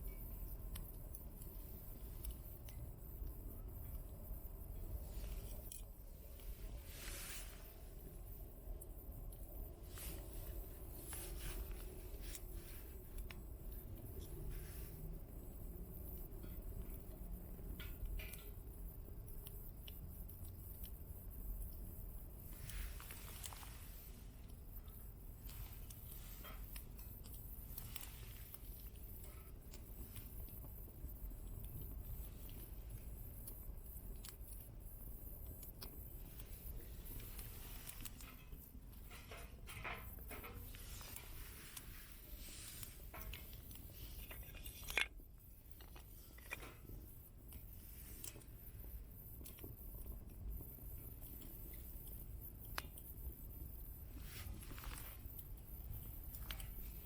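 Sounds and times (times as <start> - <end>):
low steady rumble: 0.0 - 57.0.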